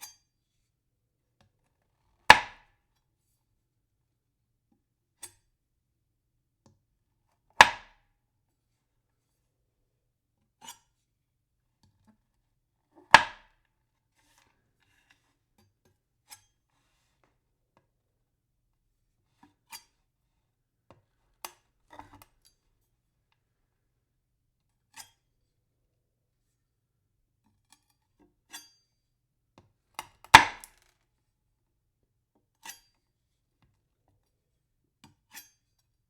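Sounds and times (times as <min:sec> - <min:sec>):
knife chopping on wooden board: 0:02.3 - 0:02.6, 0:07.6 - 0:08.0, 0:13.1 - 0:13.4, 0:30.3 - 0:30.8.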